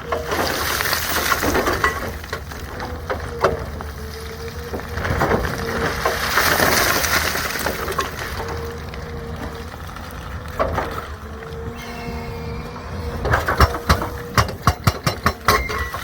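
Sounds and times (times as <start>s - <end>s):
excavator engine humming: 0.0s - 16.0s
rush of noise: 11.7s - 14.5s.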